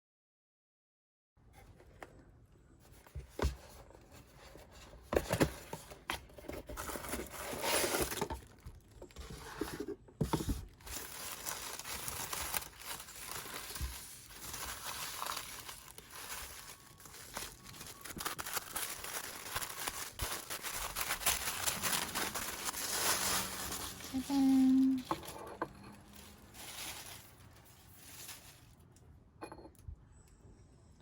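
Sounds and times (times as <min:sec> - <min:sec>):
packaging crinkling and tearing: 0:06.7 - 0:09.6, 0:10.4 - 0:25.4, 0:26.0 - 0:29.0.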